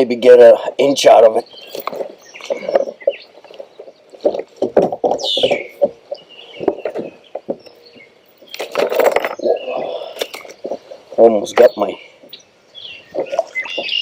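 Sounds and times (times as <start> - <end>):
knocks and thumps on kayak: 1.8 - 7.7.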